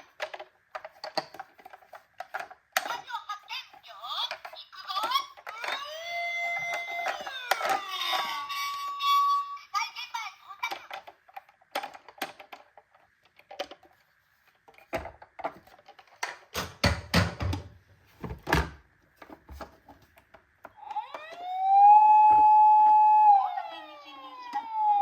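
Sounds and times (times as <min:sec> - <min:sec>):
plastic toy knocks and clatters: 0:00.0 - 0:08.8, 0:10.6 - 0:21.4
toy electronic siren: 0:05.6 - 0:09.6, 0:20.8 - 0:25.0.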